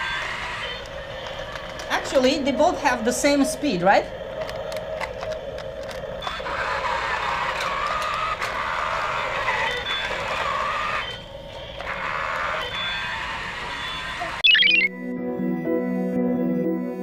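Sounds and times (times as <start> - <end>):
toy electric motors whirring: 0.0 - 3.0, 4.4 - 14.9.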